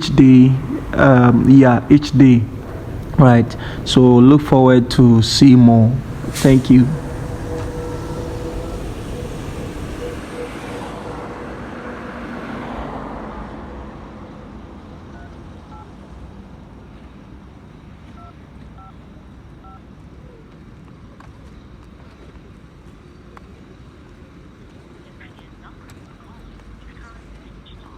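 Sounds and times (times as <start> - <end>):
steady hum: 0.0 - 11.4
vehicle rumble: 0.0 - 22.5.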